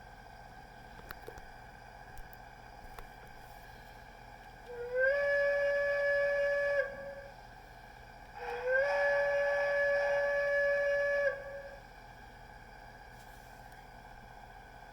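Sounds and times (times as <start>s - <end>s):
steam whistle blast from speaker: 4.7s - 7.4s, 8.4s - 11.9s.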